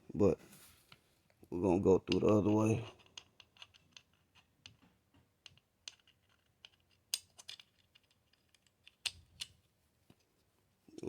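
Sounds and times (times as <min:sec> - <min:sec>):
small metal parts clicking: 0:02.1 - 0:09.7.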